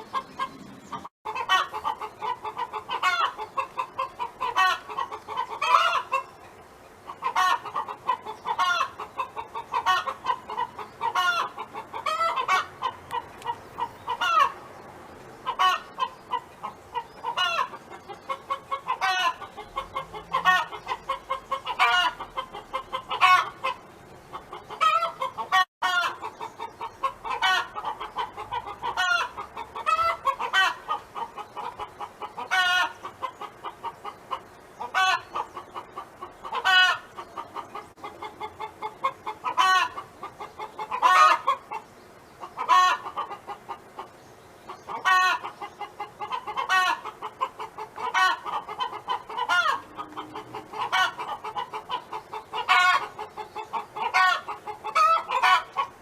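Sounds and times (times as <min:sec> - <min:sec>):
hen clucking: 0:00.0 - 0:14.8, 0:15.4 - 0:56.0
hen drawn-out call: 0:38.7 - 0:41.9, 0:44.7 - 0:56.0.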